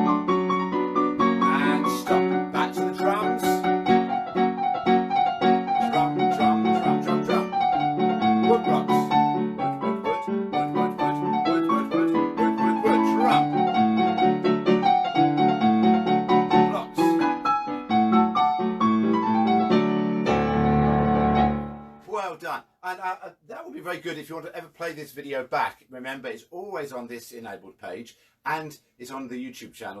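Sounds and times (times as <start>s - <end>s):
keyboard music: 0.0s - 22.2s.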